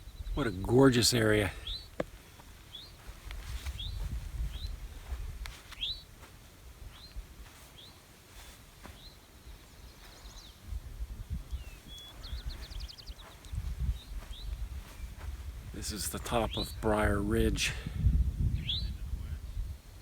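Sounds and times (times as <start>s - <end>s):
songbird chirping: 0.0s - 17.6s, 18.4s - 20.0s
gusty low rumble: 3.3s - 5.5s, 10.6s - 20.0s.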